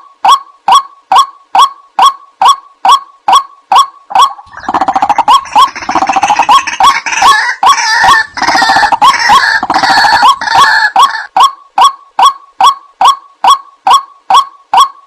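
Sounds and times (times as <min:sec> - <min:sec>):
waterhen calls: 0:00.2 - 0:15.0
chattering and croaking chorus: 0:04.2 - 0:11.3.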